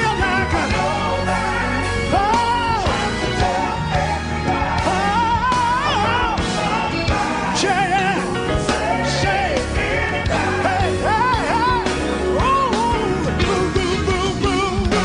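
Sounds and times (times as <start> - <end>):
band with drums and bass: 0.0 - 15.0.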